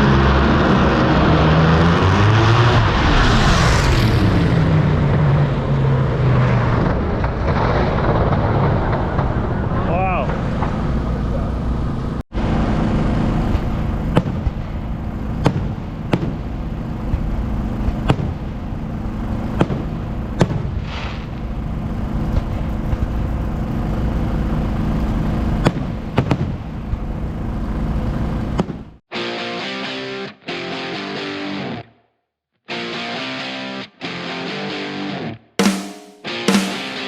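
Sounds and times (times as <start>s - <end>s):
engine pops and cracks: 22.2s - 23.8s.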